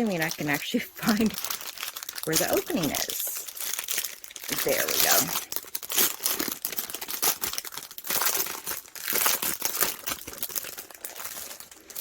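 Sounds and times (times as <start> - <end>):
plastic bags crinkling: 0.0 - 12.0.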